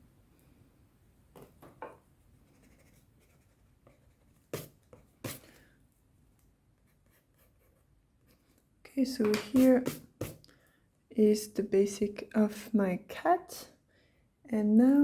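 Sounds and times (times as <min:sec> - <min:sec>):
pencil scratching on paper: 0:02.2 - 0:05.6, 0:06.8 - 0:08.5, 0:09.4 - 0:10.4.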